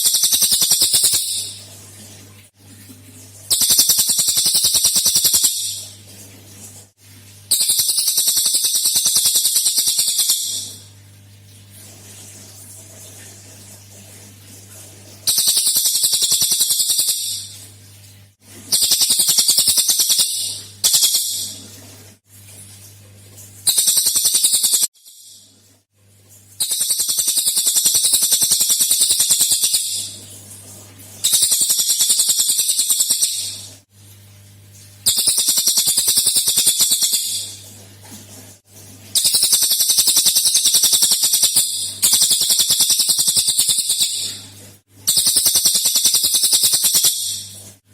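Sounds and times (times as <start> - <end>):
songbird rapid trill: 0.0 - 1.6, 3.5 - 5.8, 7.5 - 10.8, 15.3 - 17.5, 18.7 - 21.5, 23.7 - 25.4, 26.6 - 30.1, 31.2 - 33.6, 35.1 - 37.6, 39.2 - 44.3, 45.1 - 47.5.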